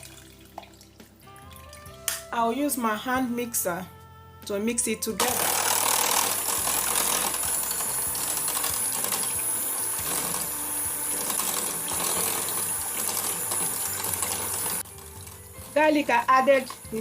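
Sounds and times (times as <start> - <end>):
electric hand mixer whisking: 5.2 - 17.0.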